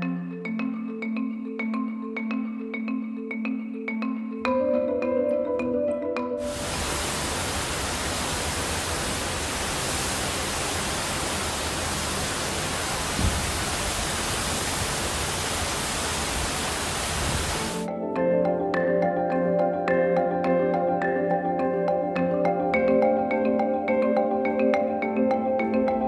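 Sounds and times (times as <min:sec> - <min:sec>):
storm wind on microphone: 0:06.5 - 0:17.8
brief thump: 0:13.2 - 0:13.4.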